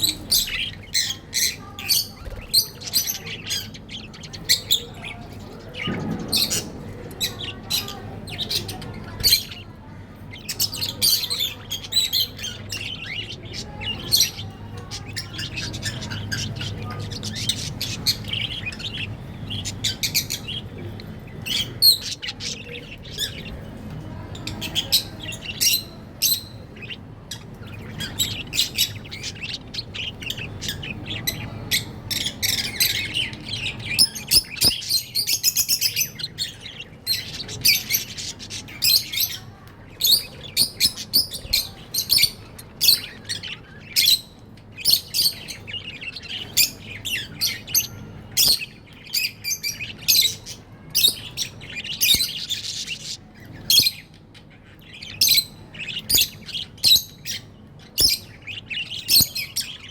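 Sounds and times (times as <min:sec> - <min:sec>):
budgerigars chirping and chattering: 0:00.0 - 0:59.9.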